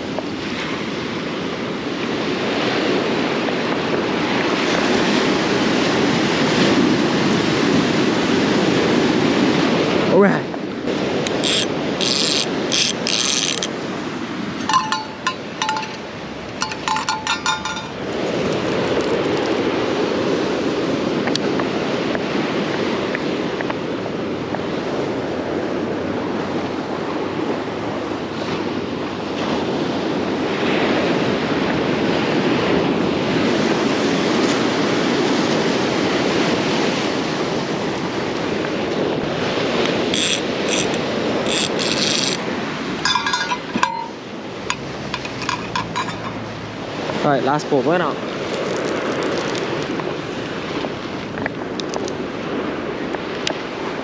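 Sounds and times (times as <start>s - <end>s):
ocean surf washing on shore: 0.0s - 54.0s
wind on microphone: 0.0s - 54.0s
fishing reel ratcheting clicks: 11.3s - 13.7s, 16.6s - 19.6s, 40.1s - 42.4s, 45.2s - 46.4s, 48.4s - 49.9s, 51.8s - 52.1s.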